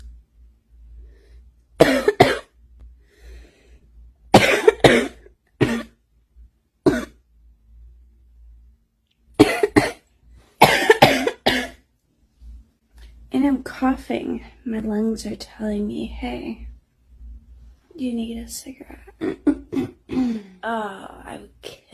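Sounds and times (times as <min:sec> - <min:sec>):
woman coughing harshly: 0:01.8 - 0:02.6, 0:04.3 - 0:06.0, 0:06.9 - 0:07.2, 0:09.4 - 0:10.0, 0:10.6 - 0:11.8, 0:19.2 - 0:20.5.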